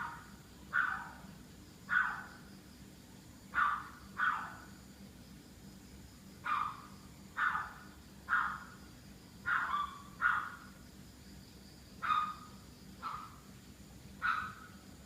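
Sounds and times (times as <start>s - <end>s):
dog barking: 0.0s - 1.3s, 1.9s - 2.3s, 3.5s - 4.7s, 6.4s - 8.8s, 9.4s - 10.6s, 12.0s - 13.4s, 14.2s - 14.7s.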